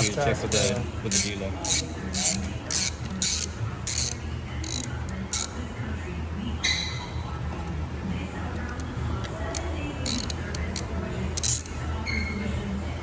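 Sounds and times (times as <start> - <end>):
ratchet wrench clicking: 0.0 - 5.6, 9.5 - 11.8.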